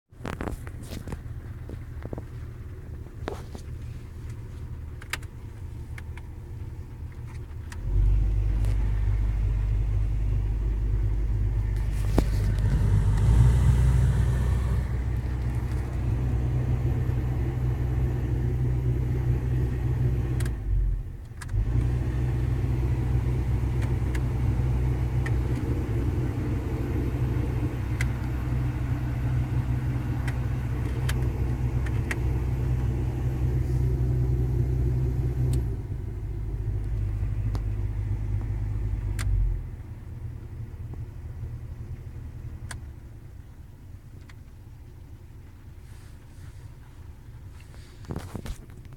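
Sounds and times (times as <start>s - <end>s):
heating system low hum: 0.2s - 48.3s.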